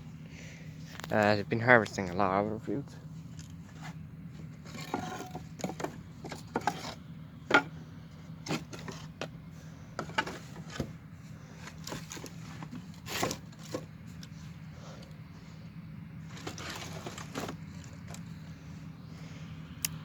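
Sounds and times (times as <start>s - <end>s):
steady low hum: 0.0s - 20.0s
clicks scrapes and rustles: 3.2s - 7.7s, 8.4s - 9.3s, 10.0s - 14.4s, 16.3s - 18.4s.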